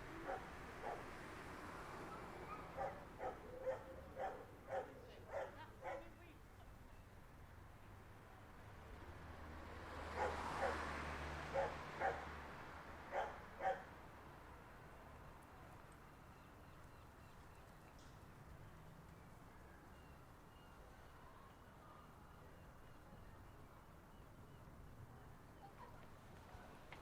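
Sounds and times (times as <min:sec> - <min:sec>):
faint outdoor ambience: 0:00.0 - 0:27.0
dog barking: 0:00.2 - 0:01.1, 0:02.1 - 0:06.2, 0:10.1 - 0:10.9, 0:11.5 - 0:12.3, 0:13.1 - 0:13.9.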